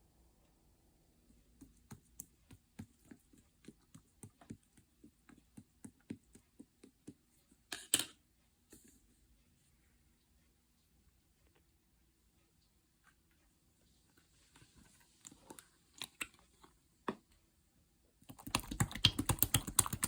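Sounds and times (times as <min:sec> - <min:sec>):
slime squelch: 0:18.2 - 0:20.0.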